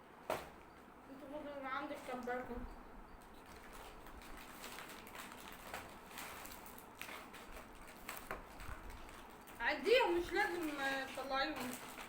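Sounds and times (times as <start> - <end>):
biscuit packets crinkling: 3.2 - 12.0.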